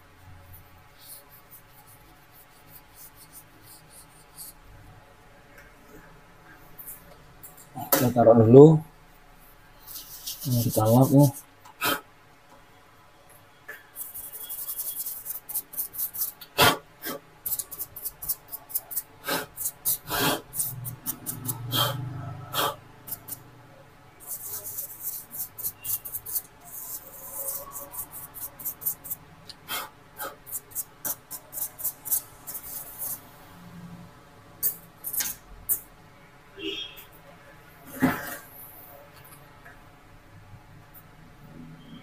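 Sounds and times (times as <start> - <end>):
cloth rubbing: 9.9 - 11.4.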